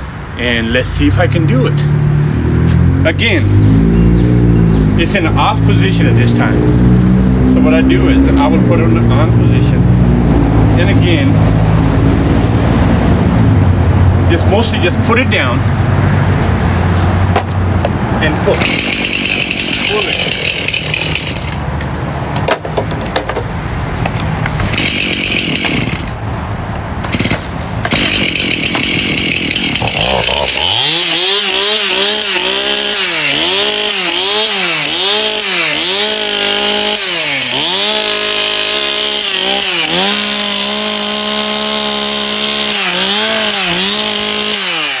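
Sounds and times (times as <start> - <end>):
chainsaw running: 18.3 - 21.9, 24.5 - 26.2, 27.0 - 45.0.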